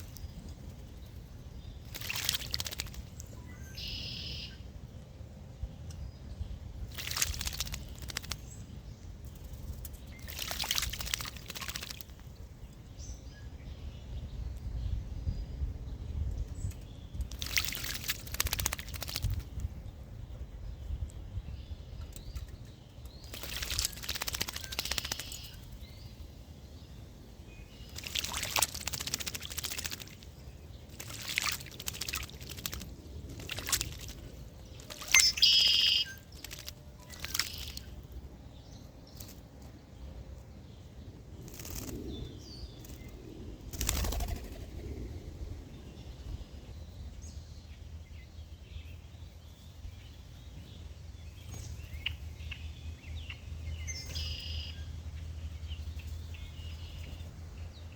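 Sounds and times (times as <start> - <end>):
wings fluttering: 0.0 - 3.9, 6.8 - 12.6, 16.7 - 19.8, 22.1 - 26.0, 27.8 - 38.2, 41.3 - 45.3.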